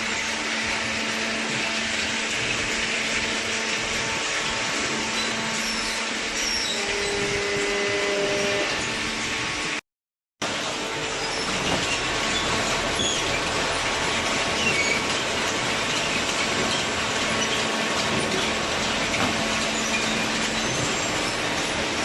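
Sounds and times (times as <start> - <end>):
baler machine running: 0.0 - 9.8, 10.4 - 22.0
light machine squeaks: 5.1 - 9.0, 11.1 - 13.5, 14.5 - 22.0.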